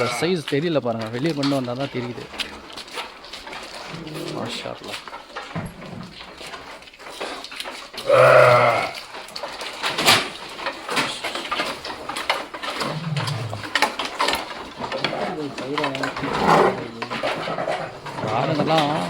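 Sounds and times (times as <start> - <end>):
sheep bleating: 0.0 - 0.3, 8.0 - 9.0, 12.8 - 13.7.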